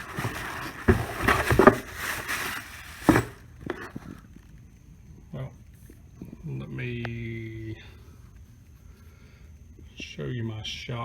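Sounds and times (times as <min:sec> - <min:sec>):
rummaging through parts: 0:00.0 - 0:04.2.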